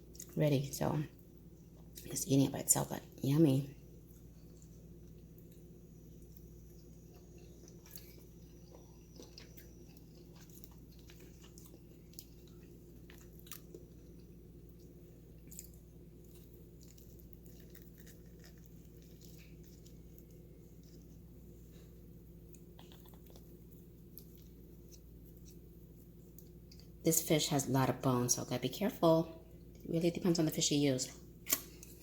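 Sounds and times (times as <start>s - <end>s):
steady low hum: 0.0s - 32.0s
person chewing: 4.1s - 26.9s.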